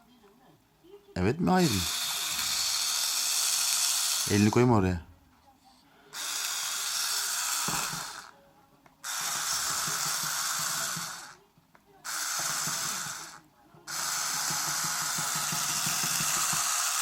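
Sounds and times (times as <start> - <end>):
motor appliance blowing air: 6.2 - 8.3, 9.0 - 11.4, 12.1 - 17.0.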